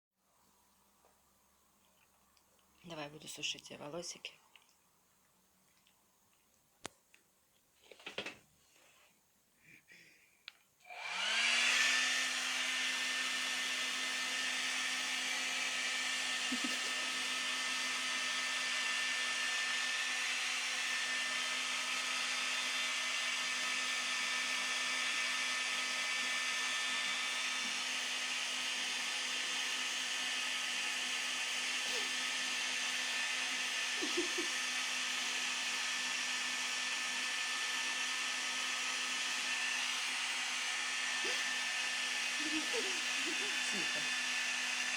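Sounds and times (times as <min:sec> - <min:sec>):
hair dryer whirring: 0:10.8 - 0:44.9.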